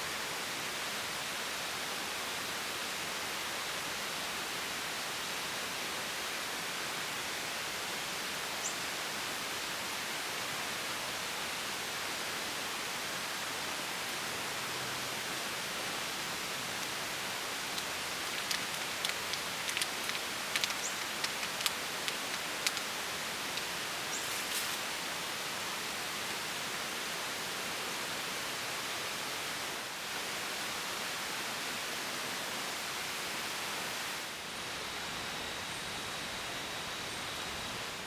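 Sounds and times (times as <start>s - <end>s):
outdoor background hiss: 0.0s - 38.0s
light clicks and taps: 17.7s - 23.7s.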